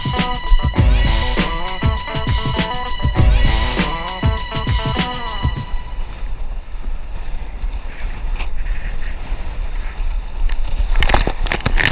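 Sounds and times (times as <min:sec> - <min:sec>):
song: 0:00.0 - 0:06.5.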